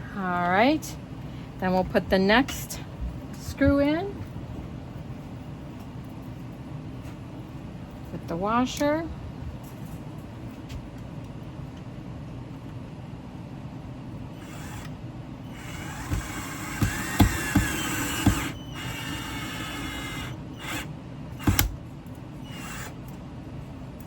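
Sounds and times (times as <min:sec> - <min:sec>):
electric screwdriver motor whining: 0:14.4 - 0:14.9, 0:15.5 - 0:21.7.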